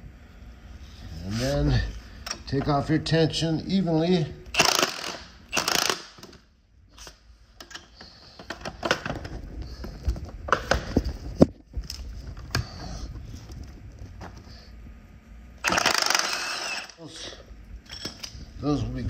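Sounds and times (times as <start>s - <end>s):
metal tools clinking and knocking: 17.8s - 18.4s.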